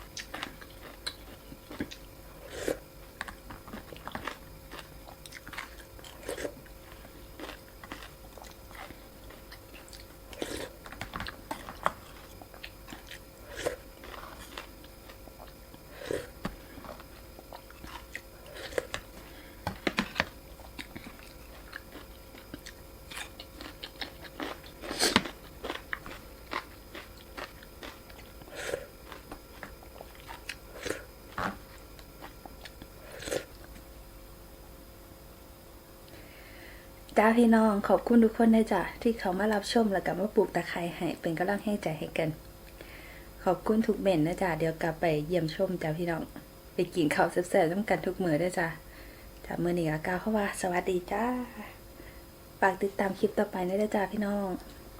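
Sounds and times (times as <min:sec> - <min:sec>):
person chewing food: 0:00.0 - 0:33.9.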